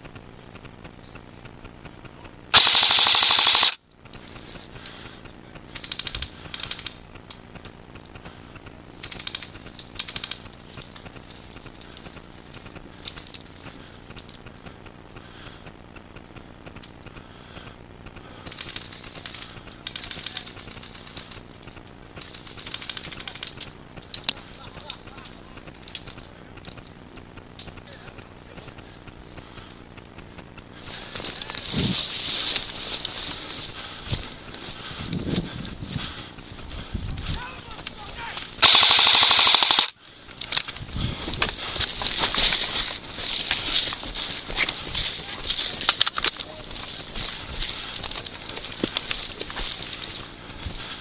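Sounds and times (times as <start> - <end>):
rustling: 0.0 - 51.0
airsoft guns firing bursts: 2.5 - 3.8, 22.2 - 23.8, 38.0 - 40.0.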